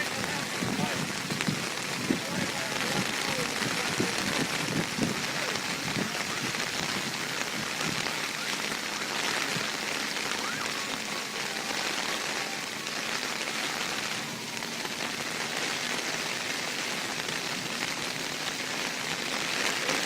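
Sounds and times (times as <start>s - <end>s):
heavy rain pouring: 0.0s - 20.0s.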